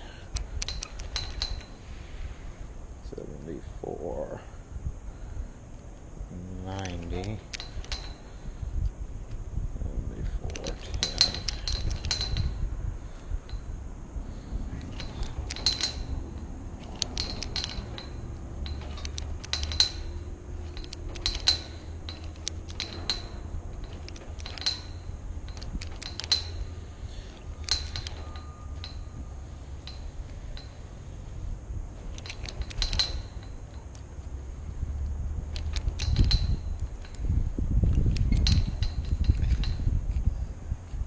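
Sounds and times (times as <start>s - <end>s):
padlock metallic clicks: 0.3s - 1.8s, 6.7s - 9.4s, 10.4s - 12.6s, 14.7s - 30.9s, 32.0s - 34.4s, 35.0s - 40.3s.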